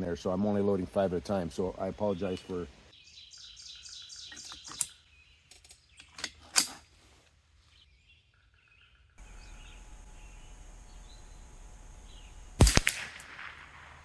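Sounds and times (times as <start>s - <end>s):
birds chirping: 0.0s - 12.6s
steady background hiss: 0.0s - 14.0s.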